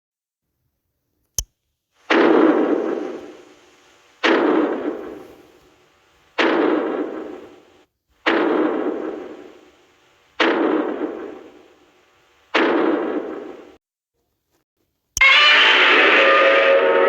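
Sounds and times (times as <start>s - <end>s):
heavy monster footstep booms: 2.1s - 3.6s, 4.2s - 5.6s, 6.4s - 11.8s, 12.6s - 13.8s.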